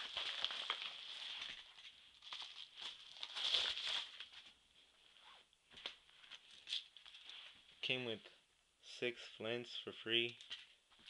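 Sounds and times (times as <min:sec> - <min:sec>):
packaging rustling and crinkling: 0:00.0 - 0:04.6, 0:05.8 - 0:07.6.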